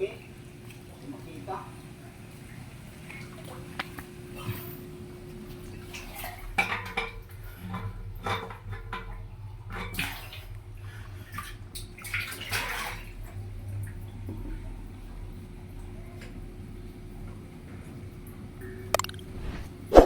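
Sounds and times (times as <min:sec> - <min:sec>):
water splashing: 0:19.0 - 0:20.0.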